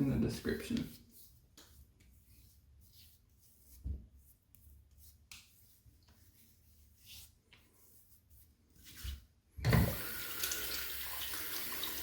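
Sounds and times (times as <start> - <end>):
faint rubbing and handling: 0.0 - 9.6.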